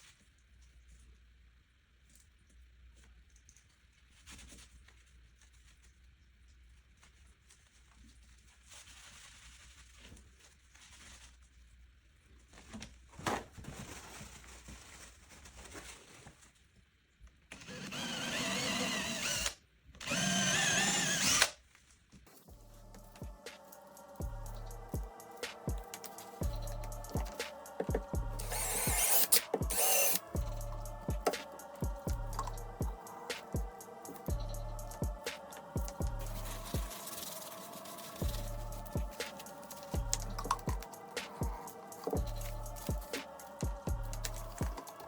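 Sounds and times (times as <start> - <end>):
faint handling sounds: 2.0 - 17.4, 34.9 - 45.0
electric drill whining: 17.6 - 21.6, 24.3 - 45.0.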